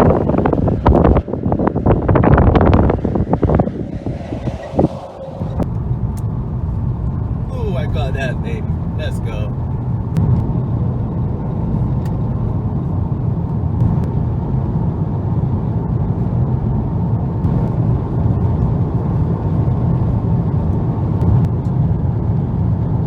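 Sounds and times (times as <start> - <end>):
car road rumble: 5.4 - 18.8.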